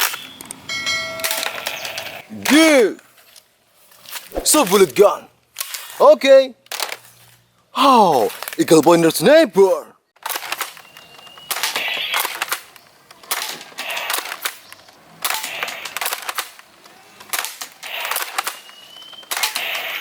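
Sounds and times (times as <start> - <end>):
toy rifle shots: 11.5 - 12.7, 13.3 - 14.6, 15.2 - 16.6, 17.3 - 20.0.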